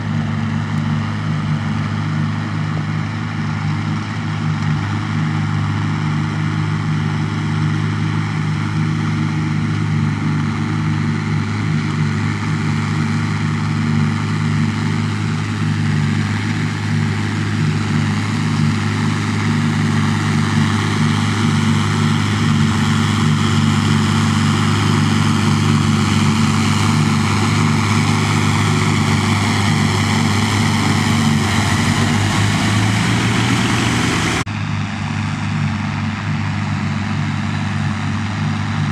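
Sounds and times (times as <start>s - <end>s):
tractor diesel engine running: 0.0s - 38.9s.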